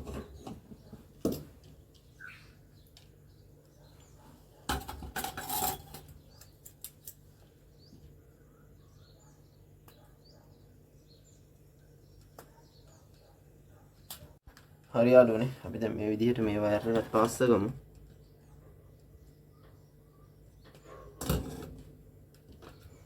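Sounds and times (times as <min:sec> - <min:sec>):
tools clattering: 0:04.7 - 0:06.2.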